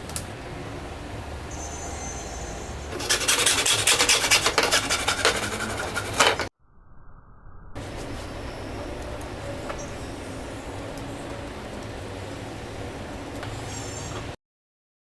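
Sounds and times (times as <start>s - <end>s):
rasping strokes on plastic pipe: 2.9s - 6.5s.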